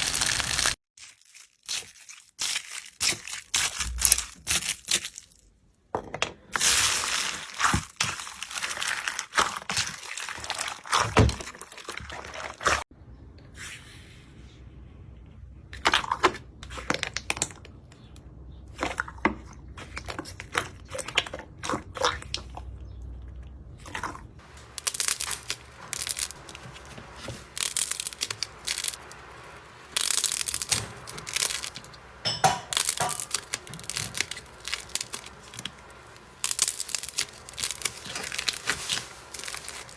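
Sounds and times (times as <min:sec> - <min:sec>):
slime crackling and crunching: 0:00.0 - 0:05.4, 0:06.6 - 0:12.9, 0:23.8 - 0:39.9.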